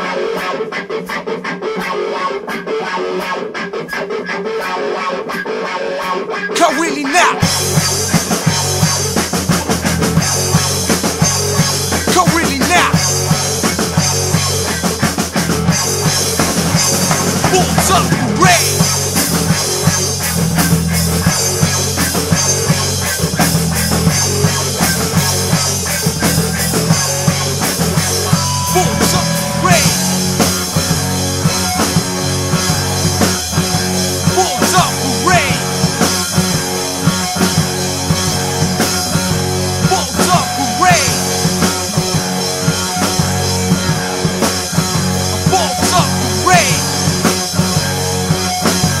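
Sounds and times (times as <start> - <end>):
bass guitar: 0.0 - 49.0
distorted electric guitar riff: 0.0 - 49.0
drum kit: 6.6 - 49.0.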